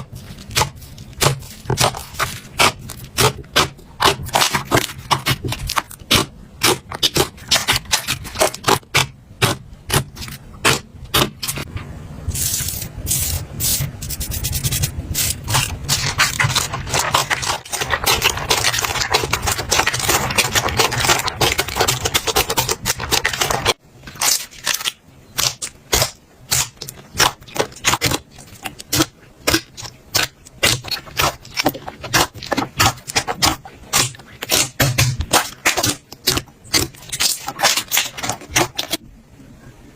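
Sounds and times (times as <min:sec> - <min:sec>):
slime crackling and popping: 0:15.5 - 0:39.0.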